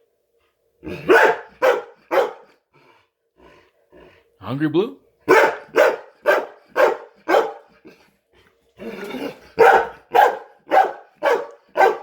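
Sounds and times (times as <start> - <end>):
dog barking: 0.9 - 2.6, 5.3 - 7.7, 9.6 - 12.0.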